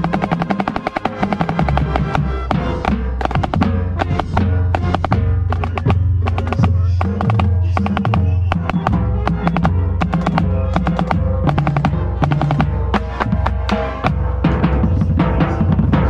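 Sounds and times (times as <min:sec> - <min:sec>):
snare drum strokes: 0:00.0 - 0:14.8
marching band playing: 0:00.0 - 0:16.0.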